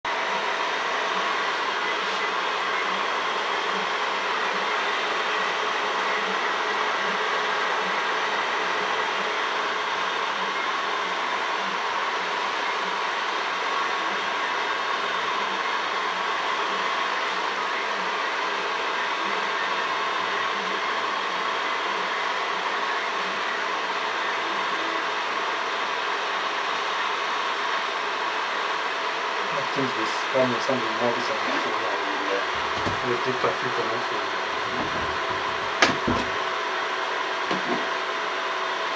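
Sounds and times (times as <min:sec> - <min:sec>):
printer whirring: 0:00.1 - 0:38.9
low pulsing hum: 0:31.2 - 0:36.5.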